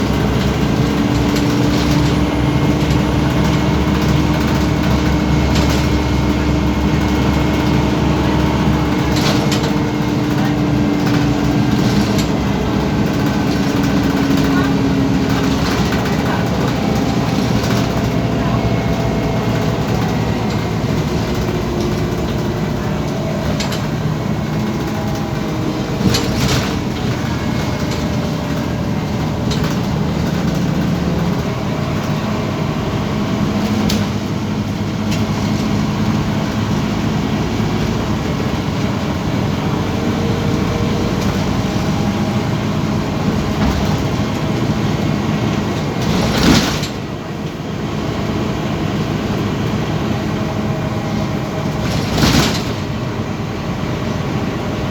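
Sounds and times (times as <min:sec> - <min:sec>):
rattles and knocks: 0:00.0 - 0:32.2
diesel bus engine: 0:00.0 - 0:54.9
road rumble: 0:00.0 - 0:54.9.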